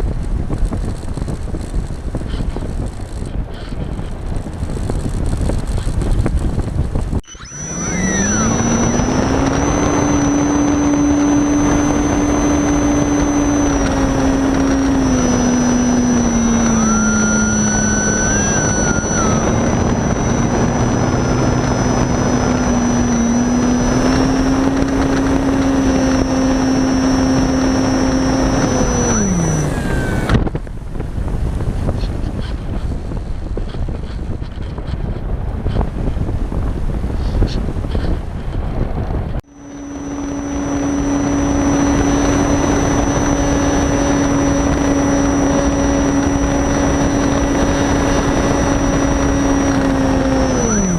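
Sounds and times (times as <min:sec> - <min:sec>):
model glider motor whining: 0:00.1 - 0:38.2, 0:39.4 - 0:50.9.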